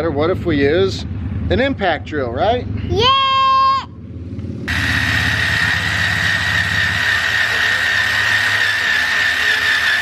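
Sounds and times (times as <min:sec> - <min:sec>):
impact drill grinding steel: 0:04.7 - 0:10.0.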